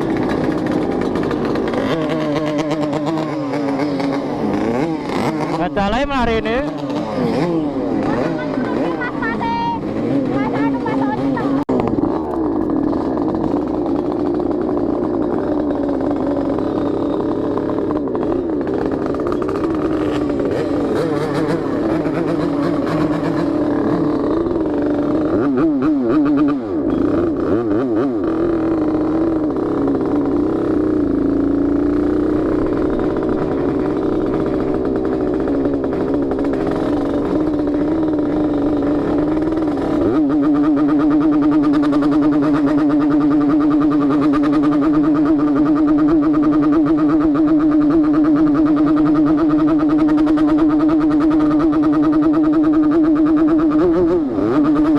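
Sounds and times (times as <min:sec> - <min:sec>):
motorcycle two-stroke engine running: 0:00.0 - 0:54.9.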